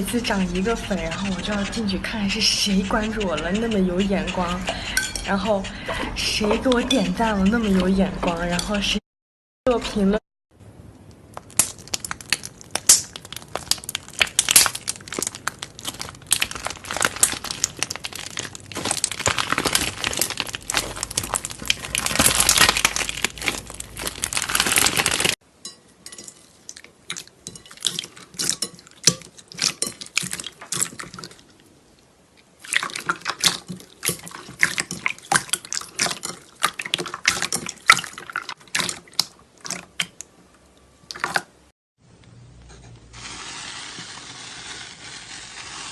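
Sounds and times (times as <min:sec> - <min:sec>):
slime clicking and crackling: 0:11.2 - 0:25.4, 0:32.6 - 0:40.3.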